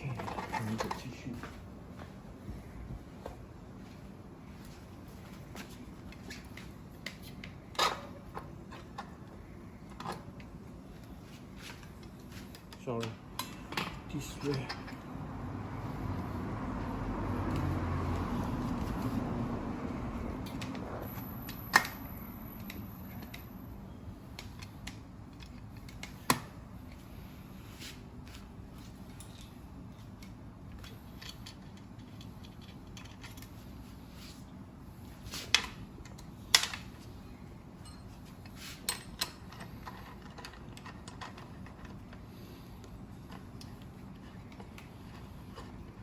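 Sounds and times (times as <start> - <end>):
small metallic clicks of parts: 11.7 - 15.1, 20.4 - 27.2, 28.2 - 33.8, 35.3 - 37.1, 37.8 - 46.0.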